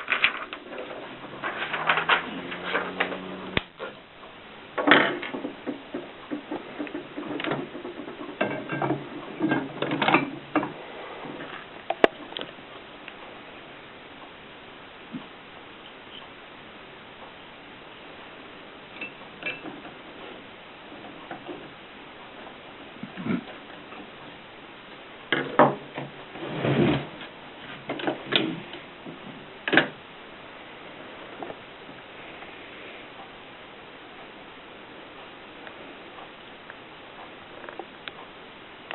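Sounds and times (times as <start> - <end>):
typewriter clicks and rattles: 1.4 - 3.0.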